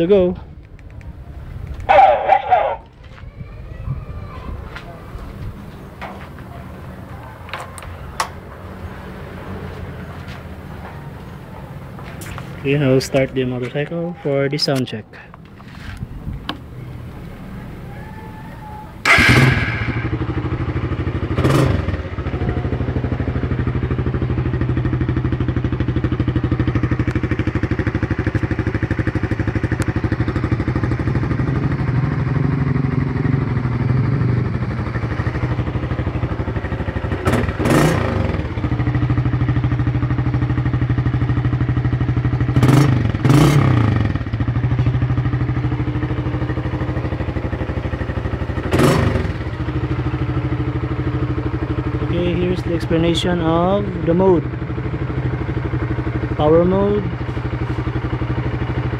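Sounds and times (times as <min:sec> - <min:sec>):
two-stroke motorcycle engine idling: 0:16.6 - 0:58.9.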